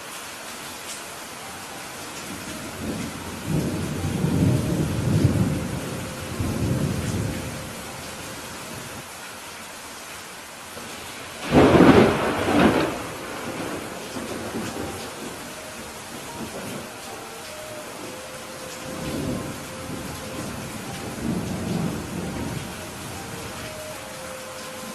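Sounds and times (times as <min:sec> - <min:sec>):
steady rain: 0:00.0 - 0:24.9
thunder rumbling: 0:02.3 - 0:08.0, 0:10.8 - 0:23.8
thunder crack: 0:11.4 - 0:15.4.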